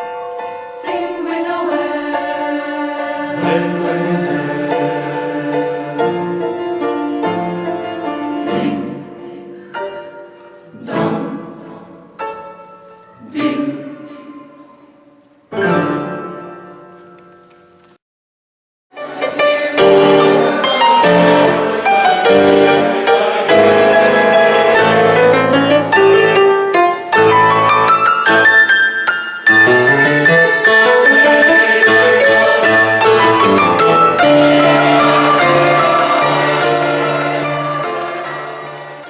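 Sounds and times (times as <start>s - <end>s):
piano music: 0.0s - 18.0s.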